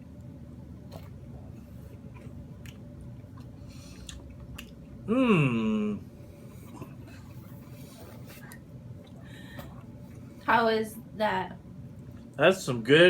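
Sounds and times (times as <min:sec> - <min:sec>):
person chewing food: 0:00.8 - 0:05.1, 0:06.3 - 0:10.4
wet mouth clicks: 0:00.9 - 0:01.2
person humming mmm: 0:05.0 - 0:06.1.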